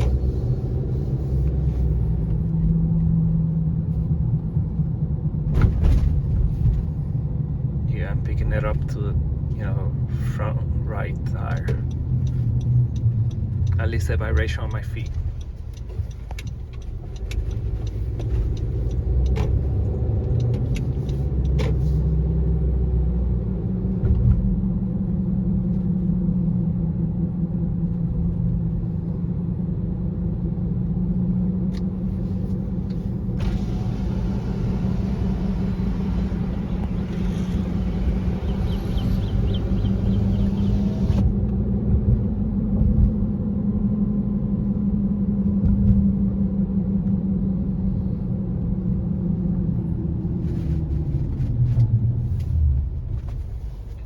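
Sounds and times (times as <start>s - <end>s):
road rumble: 0.0s - 54.0s
loud humming drone: 33.4s - 41.3s.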